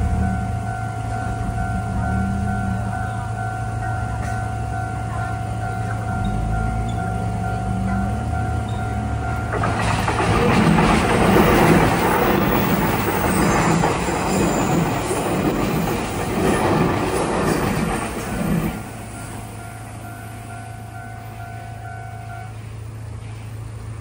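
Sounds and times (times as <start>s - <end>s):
crossing warning bell: 0.0s - 23.1s
train wheels clattering over rail joints: 8.6s - 19.4s.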